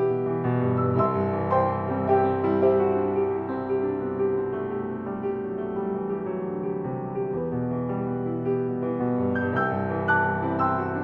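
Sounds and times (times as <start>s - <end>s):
piano music: 0.0s - 11.0s.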